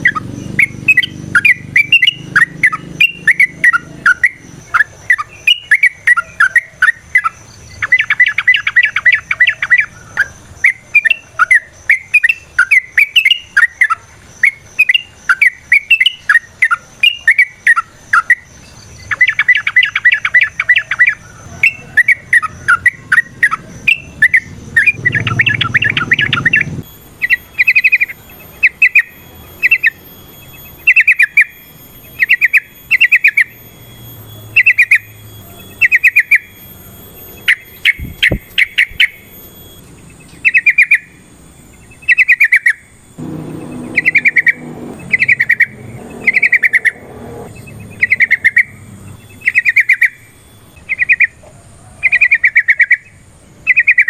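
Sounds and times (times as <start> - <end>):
bulbul singing: 0.0 - 54.0
rapid rattling trill: 41.7 - 51.2.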